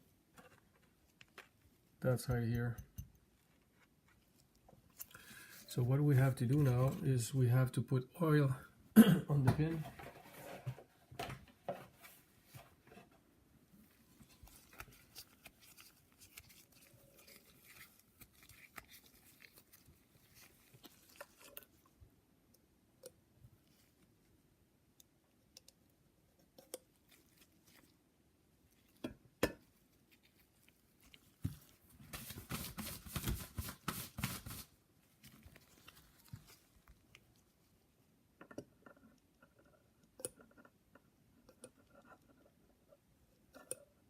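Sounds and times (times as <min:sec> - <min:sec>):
rustling rubbing noise: 0:09.7 - 0:11.0, 0:13.8 - 0:21.6, 0:29.8 - 0:36.8.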